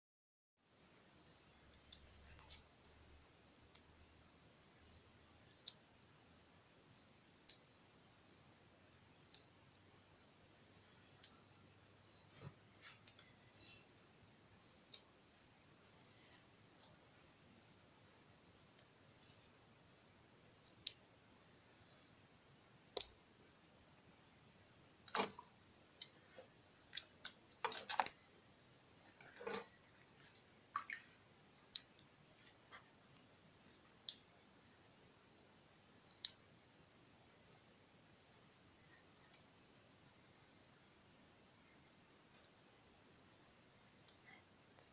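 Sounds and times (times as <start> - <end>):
opossum clicking: 13.0 - 13.3, 20.6 - 21.0, 22.9 - 23.2, 26.9 - 28.2, 31.6 - 32.1, 32.8 - 34.3, 36.1 - 36.4.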